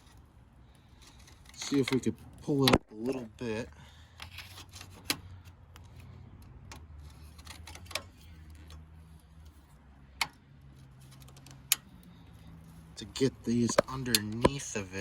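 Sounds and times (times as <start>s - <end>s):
pliers clicking and scraping on plastic: 13.6s - 14.6s.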